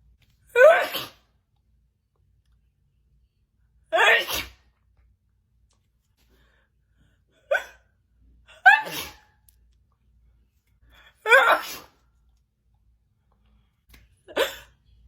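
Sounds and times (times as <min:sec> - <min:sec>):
woman sneezing: 0:00.6 - 0:01.2, 0:04.0 - 0:04.6, 0:08.6 - 0:09.3, 0:11.3 - 0:12.0.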